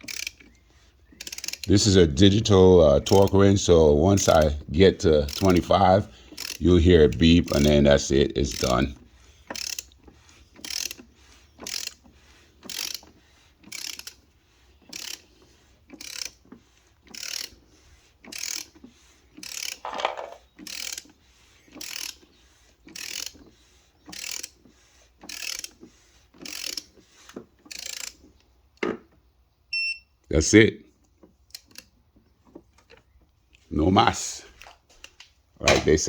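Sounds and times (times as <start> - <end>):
torque wrench ratcheting: 0.0 - 14.3, 14.9 - 27.0, 27.7 - 28.3.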